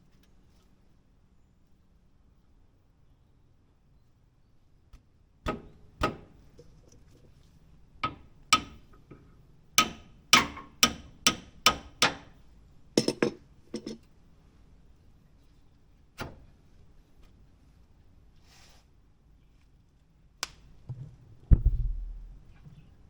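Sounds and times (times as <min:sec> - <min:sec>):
hammer striking metal: 0:09.8 - 0:12.2.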